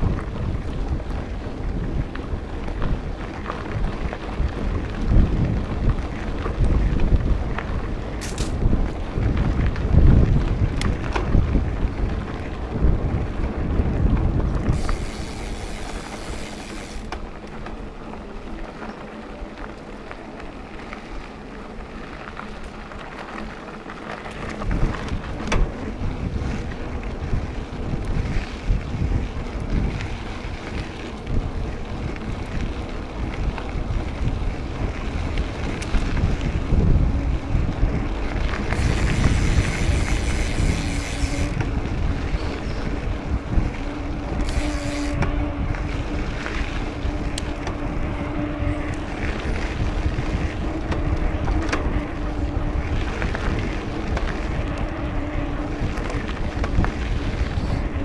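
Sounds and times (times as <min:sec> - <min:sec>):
steady rushing noise: 0:00.0 - 0:58.0
wind buffeting microphone: 0:00.0 - 0:58.0.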